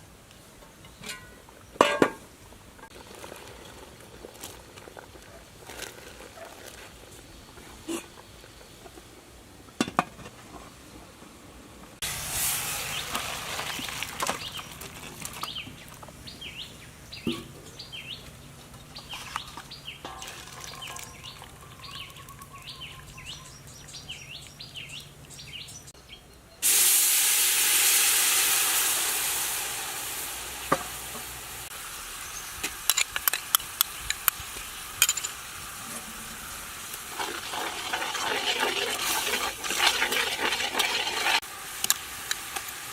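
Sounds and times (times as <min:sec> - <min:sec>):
food sizzling in hot oil: 0:12.0 - 0:14.8, 0:26.6 - 0:42.9
birdlike chirps: 0:15.4 - 0:26.6.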